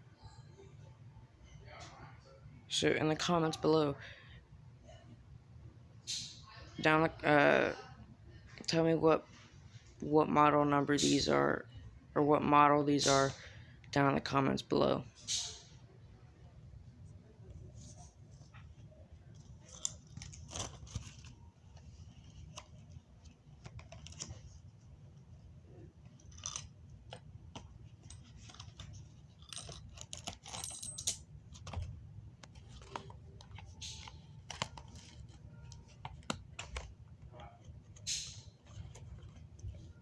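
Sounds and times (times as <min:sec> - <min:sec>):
small metallic jingles: 0:28.0 - 0:31.6
packaging rustling: 0:31.3 - 0:40.0.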